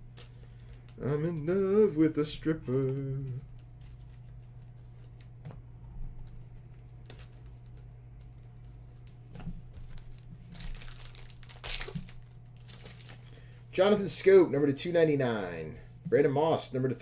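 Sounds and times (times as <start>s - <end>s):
steady low hum: 0.0s - 17.0s
trading cards being handled: 2.7s - 5.4s.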